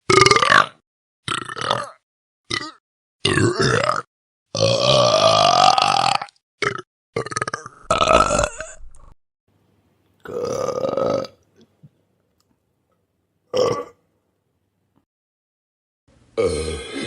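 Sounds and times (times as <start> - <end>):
person burping: 0.1 - 9.2, 10.2 - 11.8, 13.5 - 14.0, 16.4 - 17.0.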